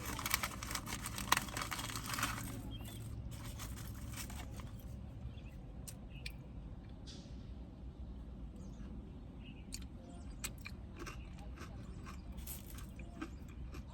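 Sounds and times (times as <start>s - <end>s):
chewing crunchy food: 0.0s - 4.8s, 9.7s - 13.9s.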